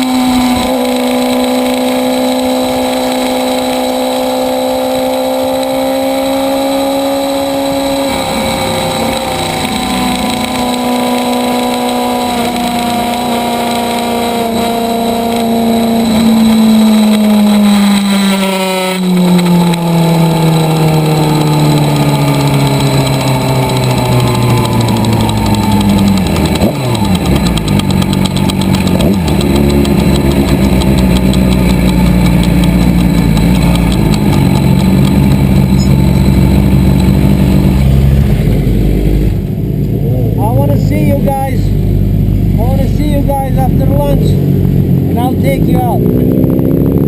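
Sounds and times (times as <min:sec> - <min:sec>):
motorcycle engine running: 0:00.0 - 0:47.0.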